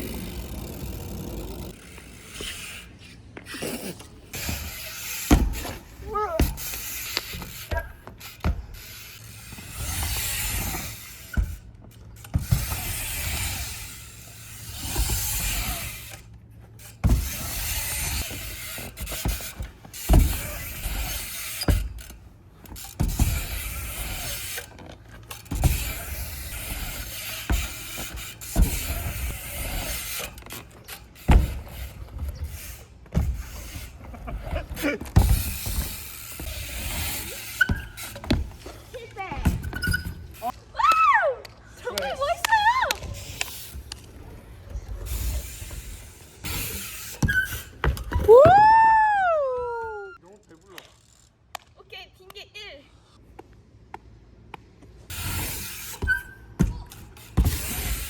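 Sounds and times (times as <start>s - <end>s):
bike tyres rolling: 0.0s - 50.2s, 53.0s - 58.0s
bike landing thuds: 4.3s - 16.2s, 16.8s - 40.5s, 43.0s - 49.2s, 55.1s - 58.0s.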